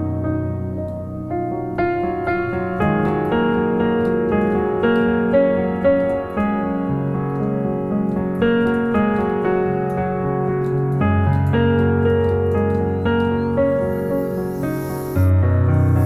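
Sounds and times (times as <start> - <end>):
slow keyboard chords: 0.0 - 16.0.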